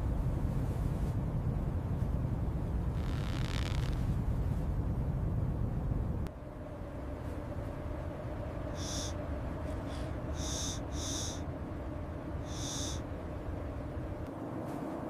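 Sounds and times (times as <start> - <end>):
steady low rumble: 0.0 - 15.0
high-pitched animal calls: 8.8 - 9.2, 9.9 - 11.4, 12.4 - 13.0.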